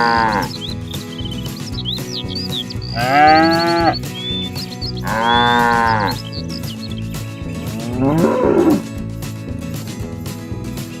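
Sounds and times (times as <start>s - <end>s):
cattle mooing: 0.0s - 0.5s, 3.0s - 4.0s, 5.0s - 6.2s, 7.7s - 8.9s.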